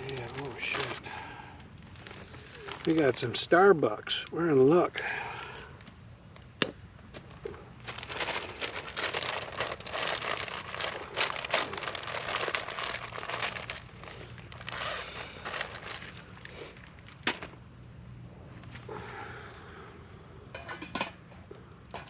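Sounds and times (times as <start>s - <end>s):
packaging crinkling and rustling: 0.0s - 1.0s, 1.8s - 3.6s, 7.1s - 17.6s.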